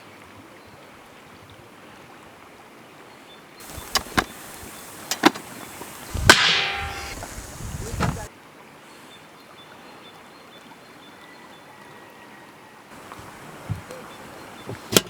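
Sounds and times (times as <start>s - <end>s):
wood being chopped: 3.6s - 8.3s.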